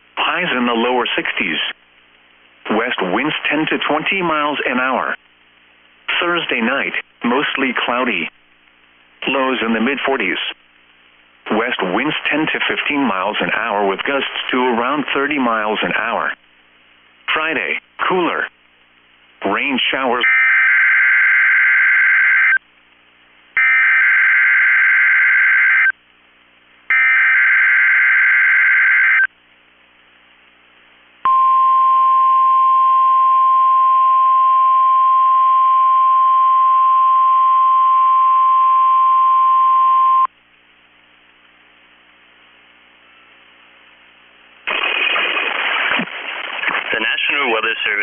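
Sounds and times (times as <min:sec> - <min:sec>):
synthesized announcer voice: 0:00.2 - 0:01.8, 0:02.7 - 0:05.2, 0:06.1 - 0:08.3, 0:17.3 - 0:18.5, 0:19.4 - 0:20.4, 0:46.9 - 0:48.0.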